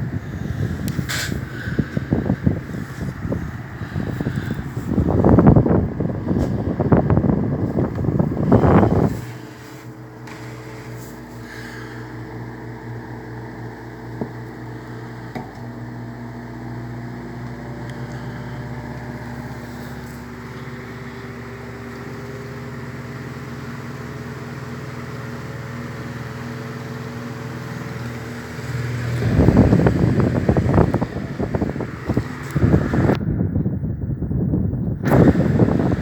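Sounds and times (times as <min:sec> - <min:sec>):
wind buffeting microphone: 0:00.0 - 0:09.5, 0:28.6 - 0:36.0
desk fan motor humming: 0:00.0 - 0:33.4, 0:34.7 - 0:36.0.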